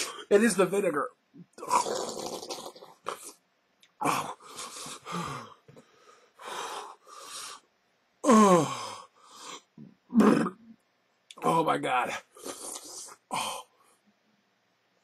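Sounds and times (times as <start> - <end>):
man groaning: 4.0 - 4.4, 8.2 - 9.0
man gasping and wheezing: 4.0 - 9.8, 12.7 - 14.0.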